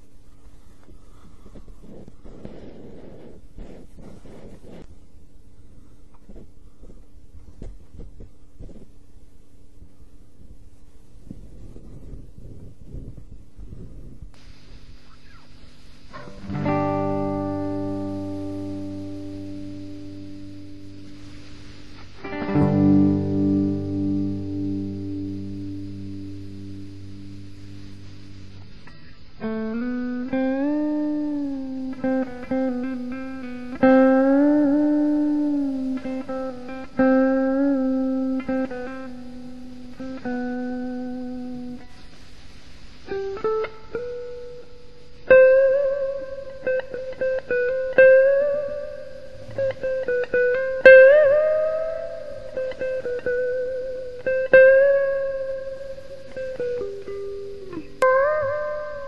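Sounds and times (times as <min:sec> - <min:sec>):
clean electric guitar melody: 0:15.0 - 0:42.3, 0:43.0 - 0:59.0.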